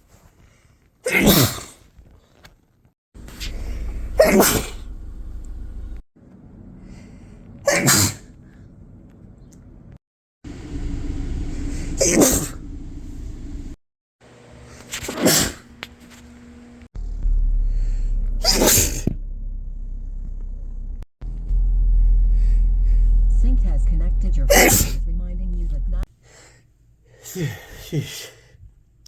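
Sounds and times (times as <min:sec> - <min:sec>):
person sneezing: 0:01.0 - 0:01.8, 0:03.5 - 0:04.9, 0:07.7 - 0:08.2, 0:15.1 - 0:15.6, 0:18.4 - 0:19.1, 0:24.5 - 0:25.0
steady low rumble: 0:03.2 - 0:13.8, 0:17.0 - 0:26.1.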